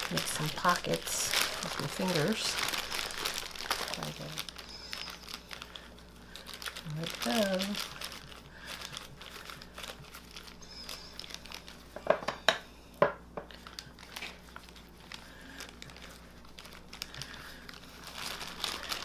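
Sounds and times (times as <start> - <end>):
sharp crackles: 0.0 - 11.9
plastic bag and gloves crinkling: 0.0 - 19.0.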